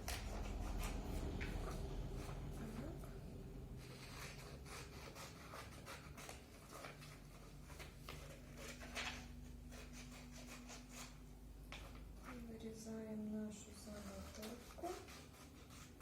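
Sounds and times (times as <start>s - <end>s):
scissors cutting paper: 0.0s - 3.1s, 3.8s - 12.5s, 13.9s - 16.0s
paper rustling: 3.8s - 12.6s, 13.8s - 16.0s.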